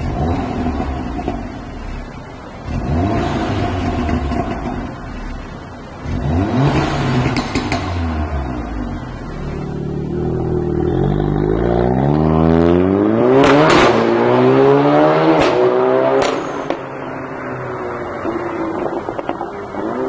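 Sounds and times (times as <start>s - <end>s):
exhaust cracks: 0.0s - 12.2s, 18.2s - 20.0s
car engine accelerating: 0.0s - 20.0s.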